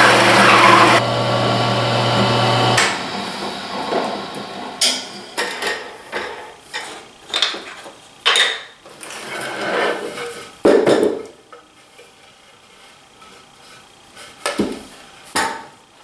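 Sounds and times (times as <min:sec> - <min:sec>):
belt sander motor hum: 0:00.0 - 0:05.5.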